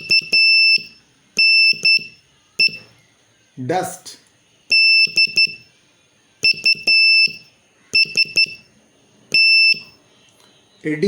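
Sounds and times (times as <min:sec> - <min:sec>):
morse code beeps: 0:00.0 - 0:02.9, 0:04.7 - 0:05.6, 0:06.4 - 0:08.7, 0:09.3 - 0:10.0.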